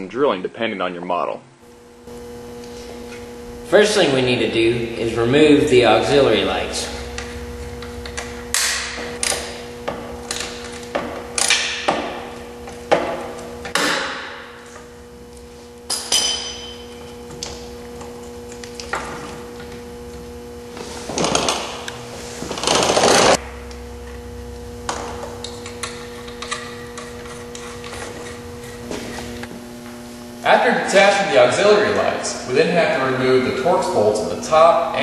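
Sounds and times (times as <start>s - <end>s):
electrical hum: 0.0s - 35.0s
metallic ring: 15.9s - 17.2s.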